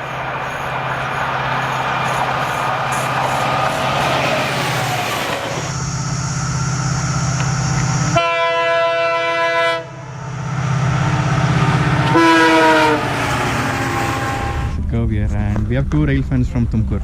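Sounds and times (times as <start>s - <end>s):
train rumbling past: 0.0s - 17.0s
locomotive horn blast: 8.1s - 10.1s, 12.0s - 14.8s.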